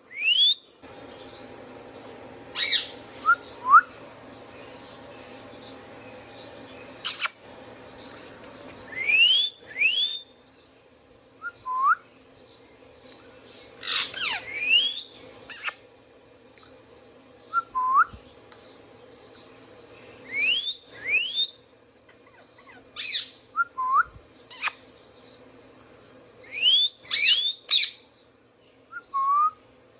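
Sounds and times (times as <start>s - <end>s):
parrot screeching: 2.6s - 3.0s, 7.0s - 7.3s, 13.8s - 15.8s, 22.6s - 23.4s, 27.1s - 27.9s
parrot whistling: 2.6s - 3.9s, 8.9s - 10.2s, 13.8s - 15.8s, 26.5s - 27.9s.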